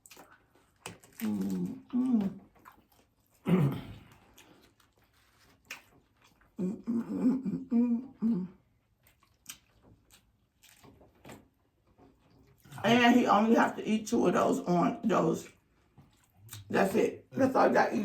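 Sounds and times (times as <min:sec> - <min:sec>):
person humming while eating: 0:01.2 - 0:02.5, 0:06.6 - 0:08.6
chewing clicks: 0:09.0 - 0:11.4.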